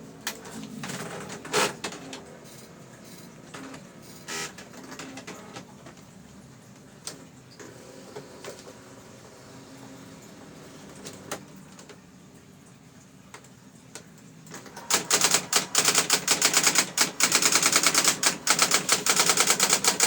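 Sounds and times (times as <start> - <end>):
typewriter clack: 14.5 - 20.0
typewriter character strikes: 14.8 - 20.0.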